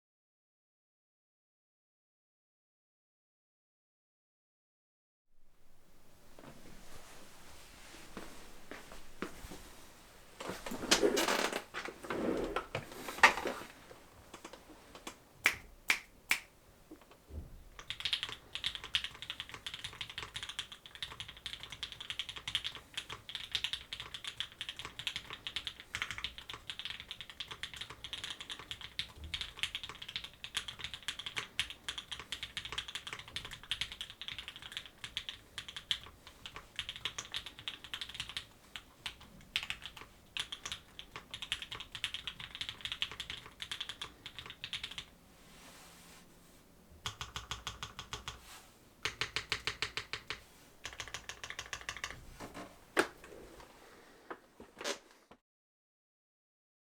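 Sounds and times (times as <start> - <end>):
mechanical keyboard typing: 17.8 - 45.1, 47.0 - 48.4, 49.0 - 52.2.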